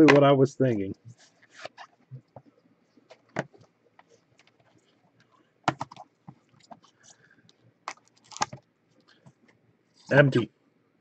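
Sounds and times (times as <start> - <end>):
cards and packaging clicking: 7.9 - 8.6.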